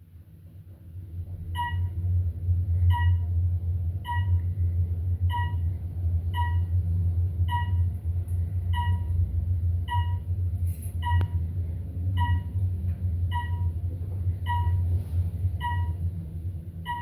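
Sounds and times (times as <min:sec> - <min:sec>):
elevator low rumble: 0:00.0 - 0:17.0
short electronic beeps: 0:14.4 - 0:14.9, 0:15.6 - 0:16.0.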